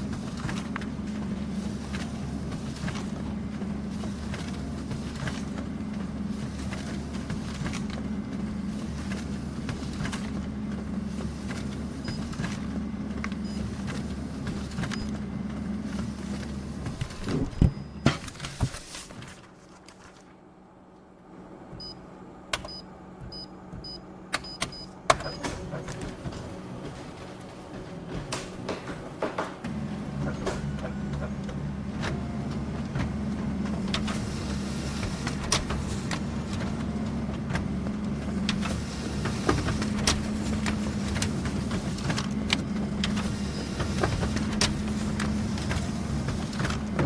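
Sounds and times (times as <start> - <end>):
printer motor hum: 0.0 - 19.3, 20.3 - 47.0
printer mechanism clunks: 22.5 - 27.4, 28.0 - 34.3, 34.9 - 47.0.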